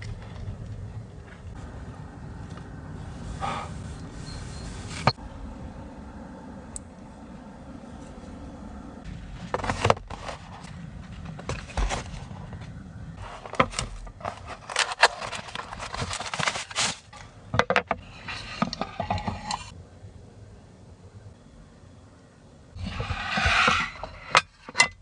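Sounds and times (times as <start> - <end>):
low steady rumble: 0.0 - 25.0
objects being handled: 9.4 - 19.7, 22.8 - 25.0.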